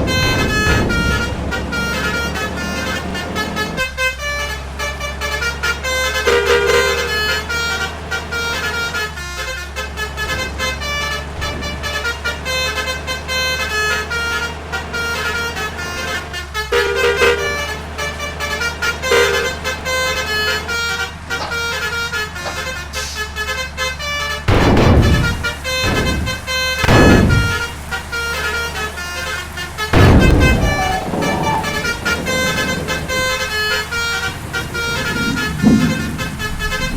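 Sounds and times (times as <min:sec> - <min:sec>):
bus melody horns: 0:00.0 - 0:36.9
low engine hum: 0:00.0 - 0:36.9
loud low surges: 0:24.5 - 0:36.9.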